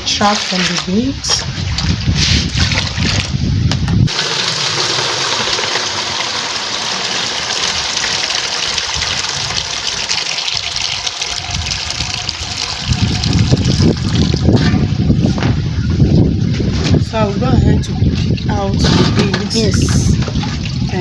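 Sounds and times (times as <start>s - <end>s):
water pouring onto beans: 4.1s - 14.5s.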